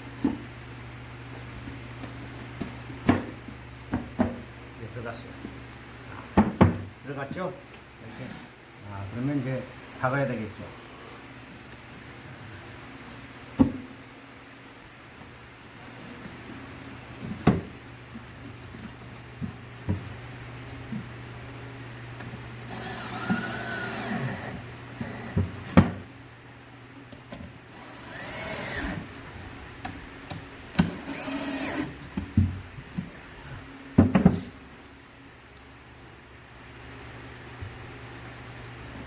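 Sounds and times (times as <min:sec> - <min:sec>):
electric drill driving screws: 0:22.7 - 0:25.3, 0:27.7 - 0:29.1, 0:30.8 - 0:32.0
knocks of wood and tool handling: 0:34.0 - 0:34.6.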